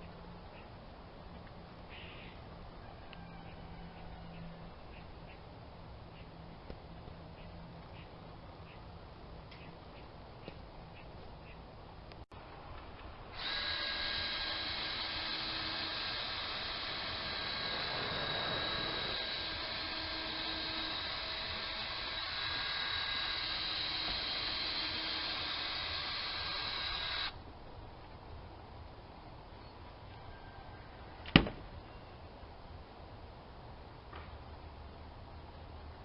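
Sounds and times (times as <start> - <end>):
power drill whining: 13.3 - 27.3.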